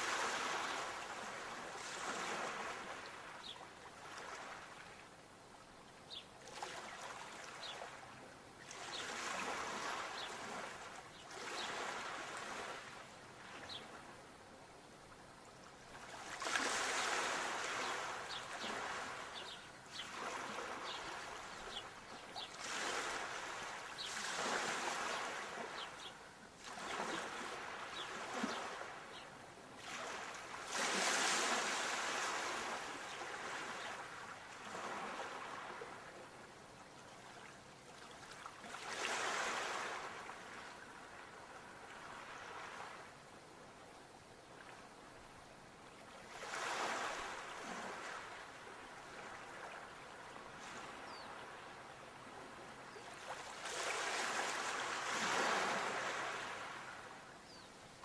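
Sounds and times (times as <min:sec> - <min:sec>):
sea waves washing in: 0:00.0 - 0:04.8, 0:16.0 - 0:36.1, 0:46.2 - 0:51.1, 0:53.1 - 0:57.3.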